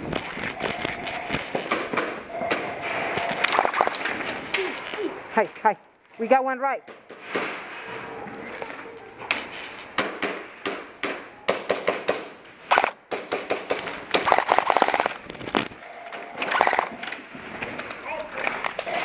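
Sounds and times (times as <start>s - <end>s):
airsoft rifle full-auto burst: 3.1s - 4.3s, 14.2s - 15.2s, 16.4s - 17.0s
airsoft gun shots: 11.1s - 15.2s.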